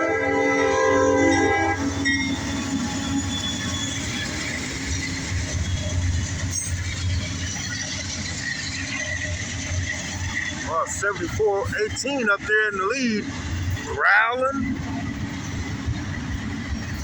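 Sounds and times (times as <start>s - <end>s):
locomotive horn: 0.0s - 3.8s
locomotive engine growling: 0.0s - 17.0s
wheel-and-rail noise: 0.0s - 17.0s
faint wheel squeals: 2.2s - 6.0s.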